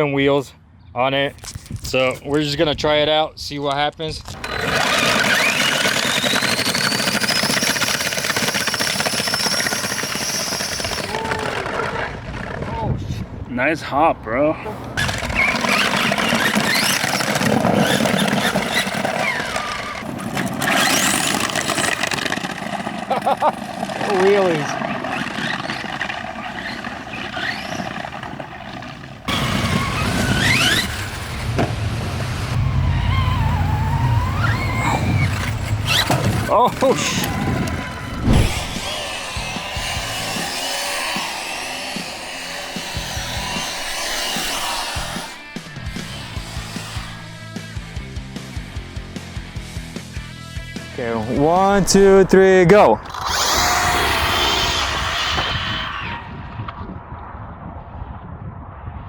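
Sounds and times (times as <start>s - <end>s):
hard wheels rattling on ground: 4.2s - 12.8s, 14.9s - 47.6s
toy car motor whining: 4.3s - 12.6s, 14.9s - 31.5s, 32.5s - 48.0s, 53.0s - 56.3s.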